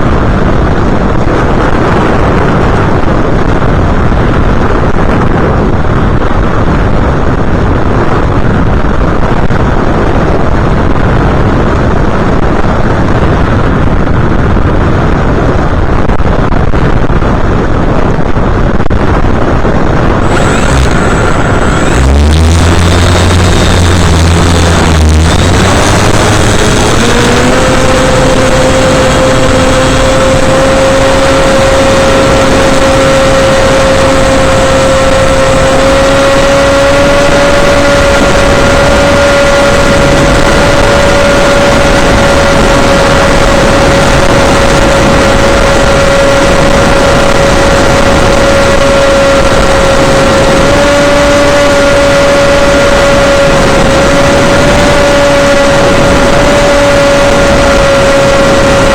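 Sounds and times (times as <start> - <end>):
model aircraft motor whine: 20.2 - 38.2.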